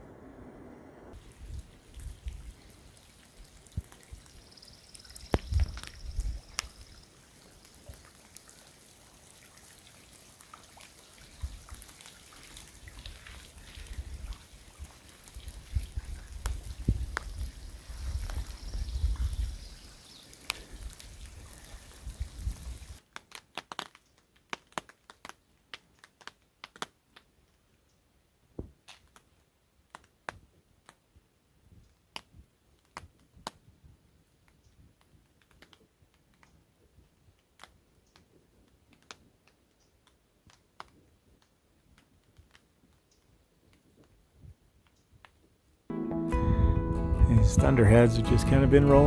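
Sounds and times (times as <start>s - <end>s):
wind buffeting microphone: 15.3s - 19.8s.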